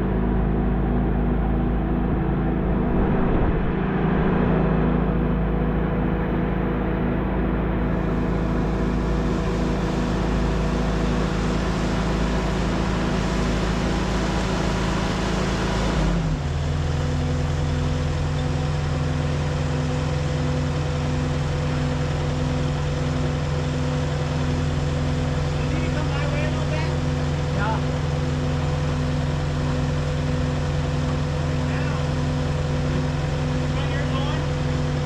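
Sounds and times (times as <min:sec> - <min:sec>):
engine running: 0:00.0 - 0:35.0.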